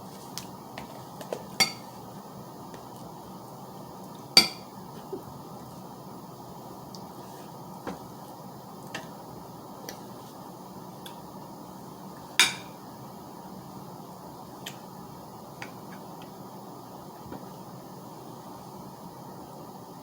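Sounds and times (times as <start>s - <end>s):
utensils clinking against dishes: 1.6s - 1.9s.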